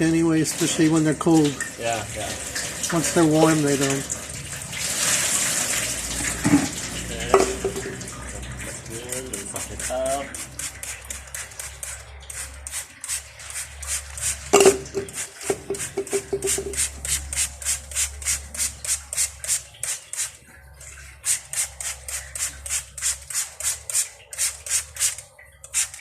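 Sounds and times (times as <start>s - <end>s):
scrubbing brake parts by hand: 9.1s - 20.4s, 21.1s - 26.0s.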